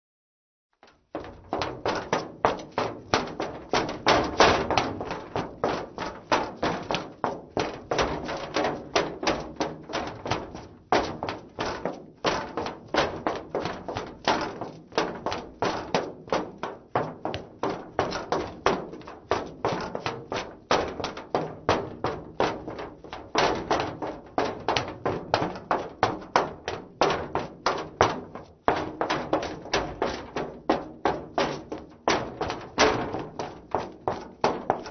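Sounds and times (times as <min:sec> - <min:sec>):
heeled footsteps on metal: 0:00.8 - 0:34.9.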